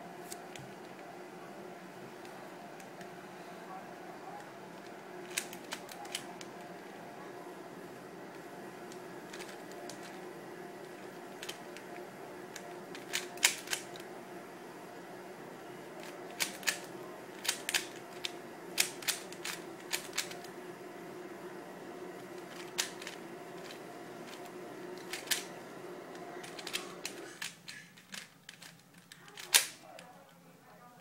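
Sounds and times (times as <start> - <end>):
speed cube plastic clicks: 4.8 - 6.9, 8.9 - 10.2, 10.9 - 14.1, 16.0 - 20.5, 22.3 - 25.5, 26.1 - 30.1.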